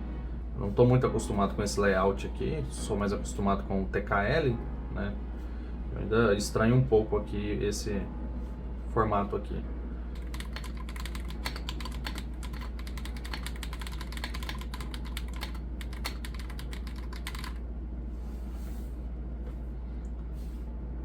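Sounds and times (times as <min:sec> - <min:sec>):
steady low hum: 0:00.0 - 0:21.0
typing on mechanical keyboard: 0:10.2 - 0:17.6.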